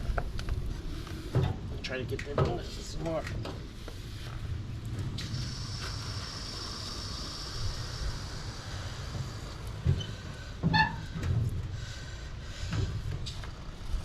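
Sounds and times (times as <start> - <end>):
spray foam hissing: 5.1 - 10.8.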